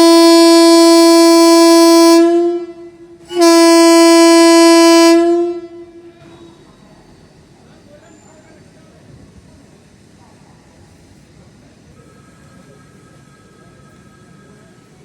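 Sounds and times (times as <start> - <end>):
train horn blasts: 0.0 - 6.7.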